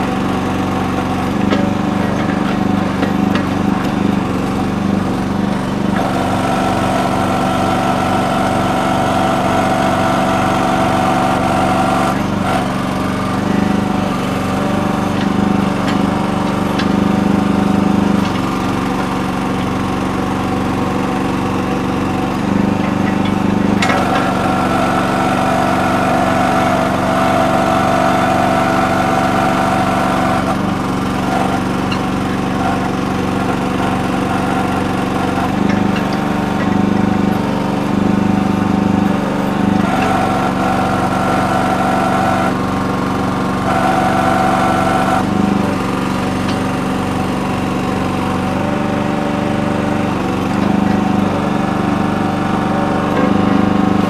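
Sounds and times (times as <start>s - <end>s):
small gas engine running: 0.0s - 54.0s.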